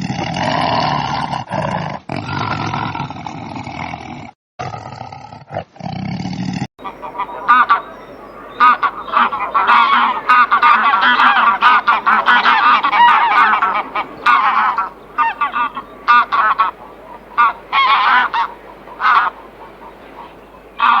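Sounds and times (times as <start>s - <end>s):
birds calling harshly: 6.8s - 21.0s.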